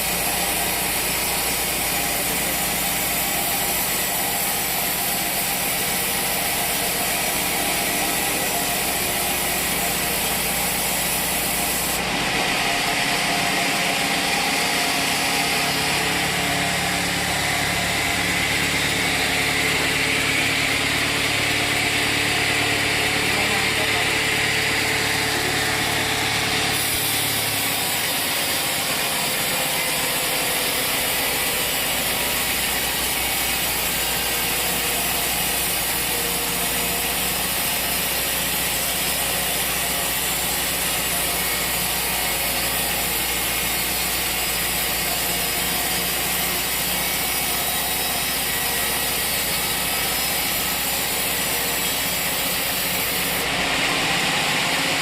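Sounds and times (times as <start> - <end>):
sawmill machinery running: 0.0 - 55.0.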